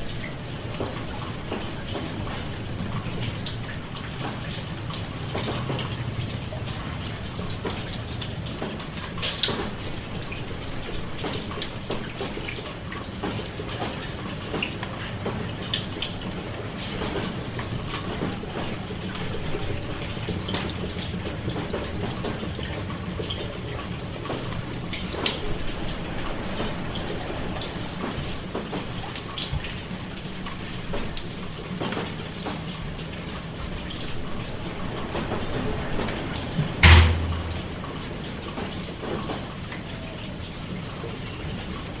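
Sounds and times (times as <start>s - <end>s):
raindrops ticking close by: 0.0s - 42.0s
steady rain: 0.0s - 42.0s
loud low thump: 36.8s - 37.9s.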